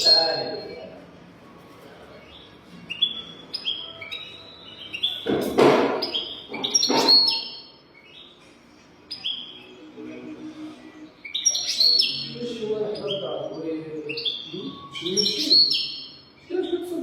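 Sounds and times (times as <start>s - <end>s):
finch twittering: 0.0s - 0.8s, 2.3s - 8.4s, 9.0s - 10.4s, 11.2s - 17.0s
harsh rasping bird notes: 6.0s - 16.4s.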